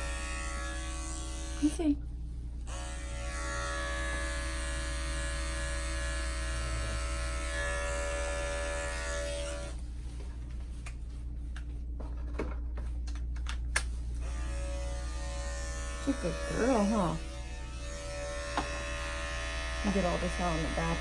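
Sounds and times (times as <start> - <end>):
electric clippers droning: 0.0 - 1.9, 2.6 - 9.8, 14.2 - 21.0.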